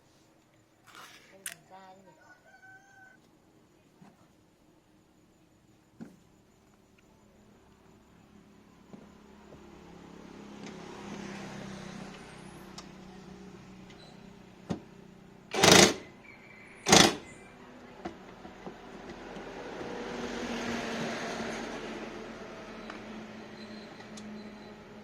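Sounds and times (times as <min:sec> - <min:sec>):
loud short noisy bursts: 0:15.5 - 0:16.1, 0:16.8 - 0:17.3.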